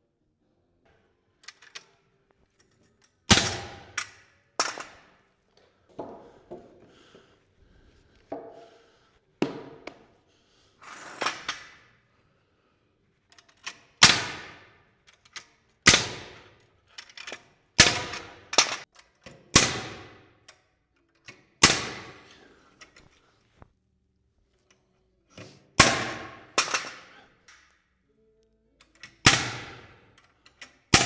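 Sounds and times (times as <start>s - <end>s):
nail gun firing: 3.3s - 5.1s, 14.0s - 14.7s, 15.8s - 16.5s, 17.8s - 18.8s, 19.5s - 20.2s, 21.6s - 22.2s, 25.8s - 27.0s, 29.2s - 30.0s.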